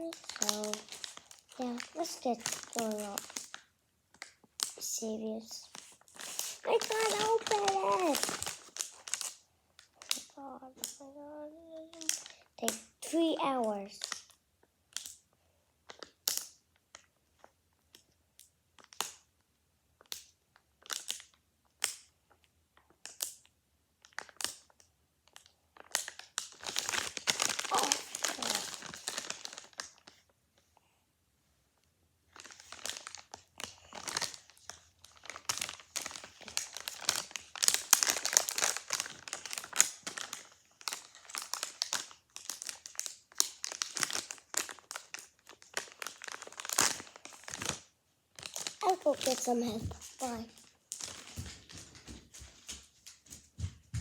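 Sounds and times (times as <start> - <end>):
plastic packaging crinkling: 0.0 - 15.2, 24.0 - 30.3, 32.3 - 53.2.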